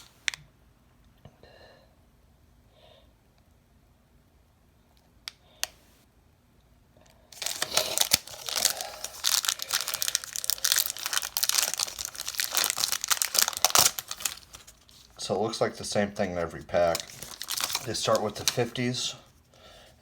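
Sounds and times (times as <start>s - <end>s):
wrapper tearing and crinkling: 7.4s - 15.2s, 16.8s - 18.9s.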